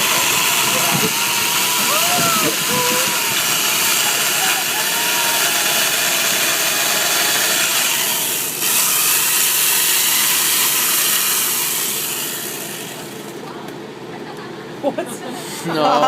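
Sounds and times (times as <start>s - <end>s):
power tool cutting ice: 0.0s - 13.4s.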